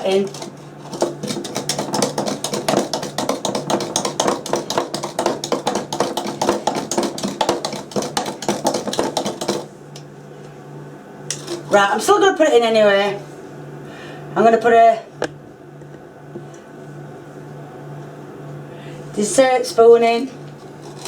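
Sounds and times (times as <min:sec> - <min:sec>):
utensil clicking against bowl: 0:00.0 - 0:10.1.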